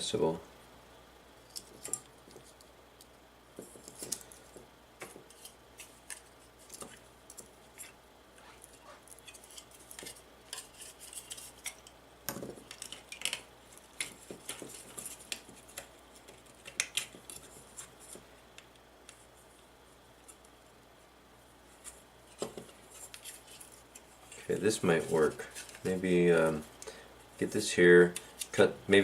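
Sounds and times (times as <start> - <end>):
small parts clicking and clattering: 8.7 - 17.5.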